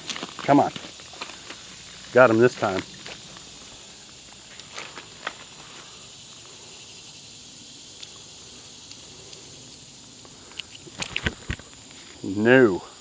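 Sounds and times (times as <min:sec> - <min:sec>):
insects droning: 0:00.0 - 0:13.0
faint clicks and rustles: 0:07.9 - 0:12.2.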